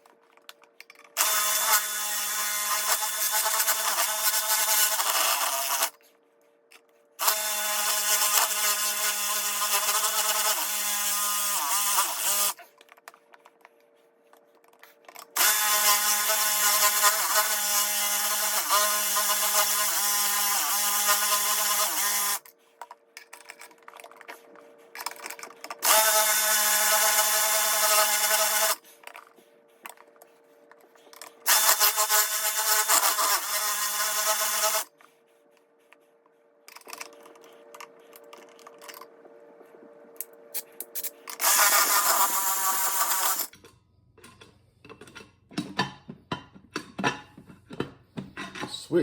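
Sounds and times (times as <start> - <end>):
scraping and clicks: 0.0 - 1.2, 22.4 - 25.8, 34.9 - 39.4
electric drill drilling: 1.2 - 5.9, 7.2 - 12.6, 15.4 - 22.4, 25.8 - 28.8, 31.5 - 34.9, 41.4 - 43.5.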